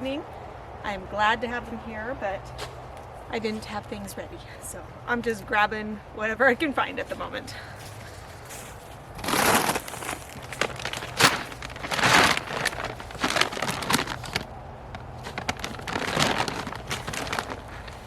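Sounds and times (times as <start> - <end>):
feed bag crinkling and rustling: 7.8 - 18.0.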